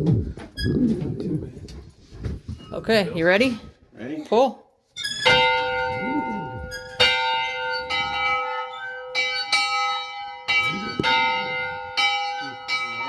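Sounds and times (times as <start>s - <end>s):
church bell ringing: 5.1s - 13.0s.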